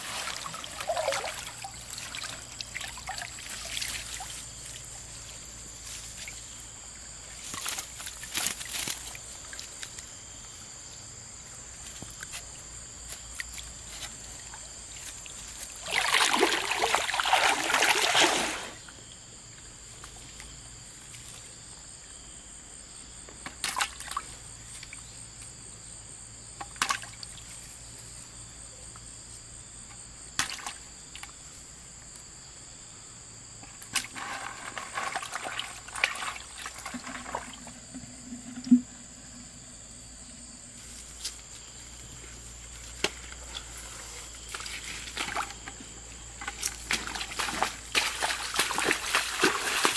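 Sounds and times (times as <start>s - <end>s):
loud water splashing: 0.0s - 4.2s, 15.8s - 18.8s, 47.0s - 49.9s
short sharp splashes: 0.0s - 4.3s, 15.8s - 18.8s, 46.9s - 49.9s
river water trickling: 0.0s - 10.0s, 14.4s - 19.2s, 34.0s - 39.5s, 46.4s - 49.9s.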